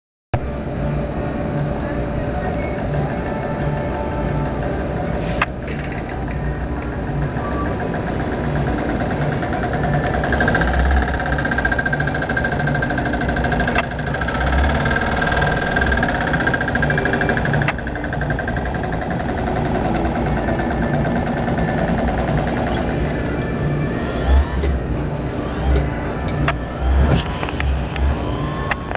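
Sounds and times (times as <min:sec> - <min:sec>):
sharp clicks: 0:08.7 - 0:20.2.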